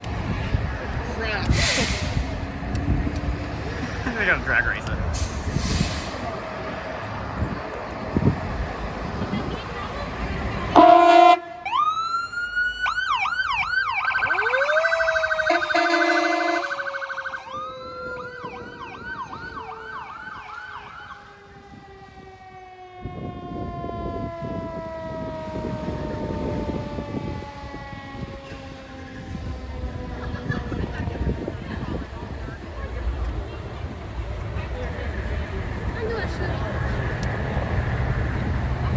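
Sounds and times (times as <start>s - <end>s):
low engine rumble: 0.0s - 11.0s, 24.3s - 38.9s
air horn blast: 10.7s - 11.6s, 15.4s - 16.9s
electronic sirens wailing and yelping: 10.8s - 32.0s.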